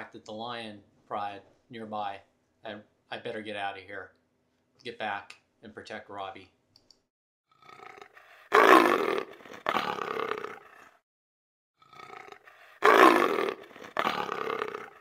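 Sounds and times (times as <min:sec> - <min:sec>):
lion roaring: 0:07.6 - 0:10.9, 0:11.8 - 0:15.0.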